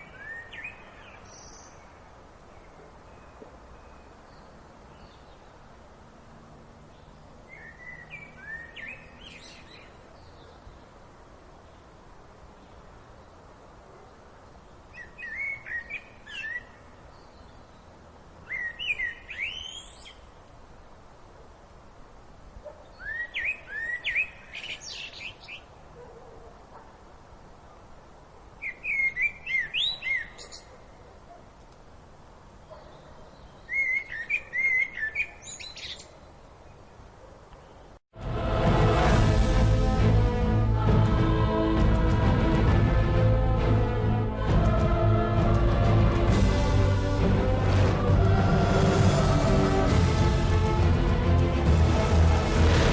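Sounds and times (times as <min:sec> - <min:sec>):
bird singing: 0:00.0 - 0:05.7, 0:06.9 - 0:12.0, 0:14.8 - 0:20.3, 0:22.8 - 0:25.7, 0:28.6 - 0:31.0, 0:32.6 - 0:37.0
low background hiss: 0:00.0 - 0:52.6.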